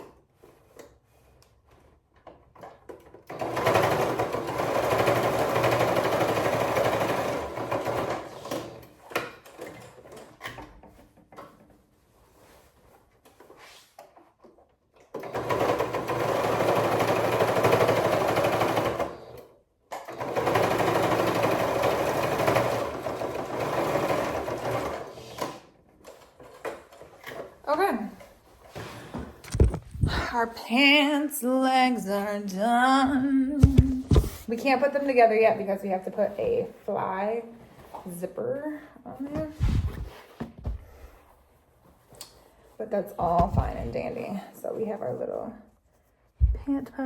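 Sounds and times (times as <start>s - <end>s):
sewing machine stitching: 1.8s - 10.7s, 15.0s - 28.3s.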